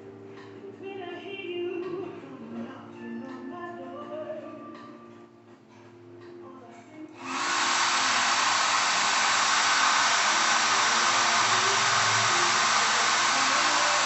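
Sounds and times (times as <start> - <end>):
hair dryer blowing: 7.2 - 14.0.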